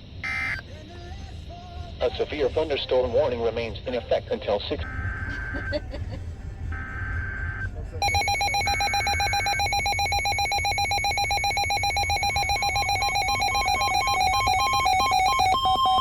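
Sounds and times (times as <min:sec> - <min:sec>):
buzzy electronic alert beep: 0:06.8 - 0:16.0
higher alternating alert tone: 0:08.0 - 0:16.0.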